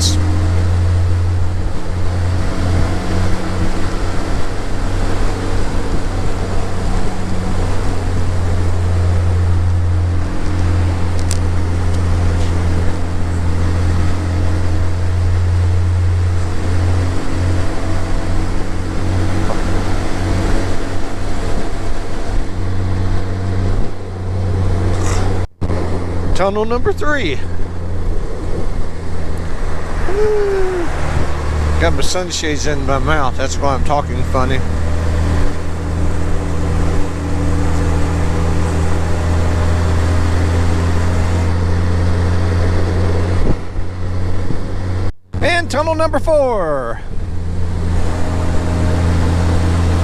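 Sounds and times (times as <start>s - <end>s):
motorcycle engine running: 0.0s - 30.1s
wind and road noise: 0.0s - 50.0s.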